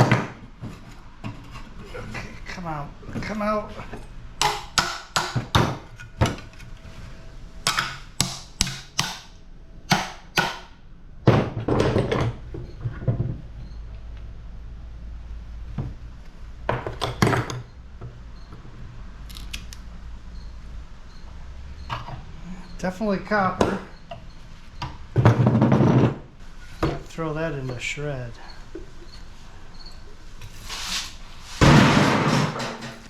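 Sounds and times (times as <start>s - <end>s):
metal clatter: 31.5s - 33.0s
metal clicks and knocks: 32.0s - 33.0s.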